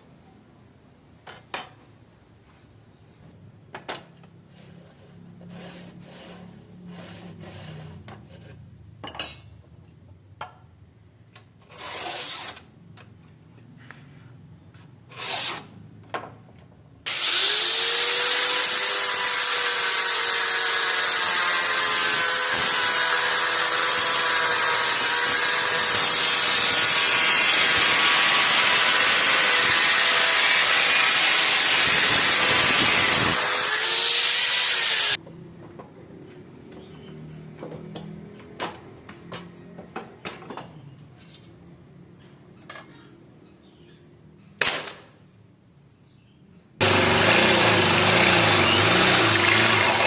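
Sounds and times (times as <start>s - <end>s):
electric power tool motor whine: 17.1s - 35.2s, 46.8s - 50.0s.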